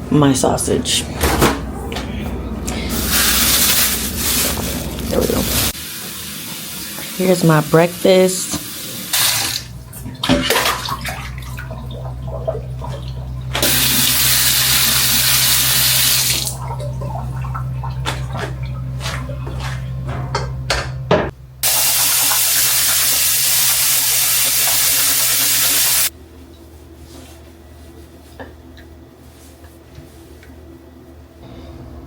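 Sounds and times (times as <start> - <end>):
low appliance hum: 0.0 - 24.4, 25.3 - 32.0
sink tap running: 3.0 - 26.1.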